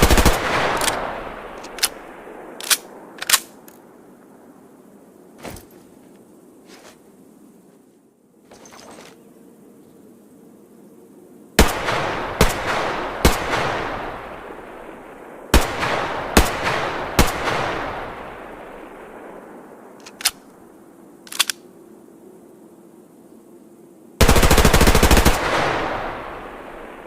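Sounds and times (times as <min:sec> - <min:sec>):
short clicks: 0:21.2 - 0:21.6.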